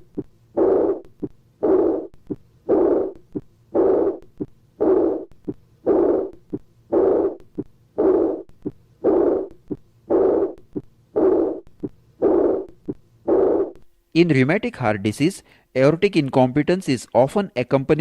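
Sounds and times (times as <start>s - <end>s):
heart murmur: 0.0s - 13.8s
heartbeat through stethoscope: 0.0s - 13.8s.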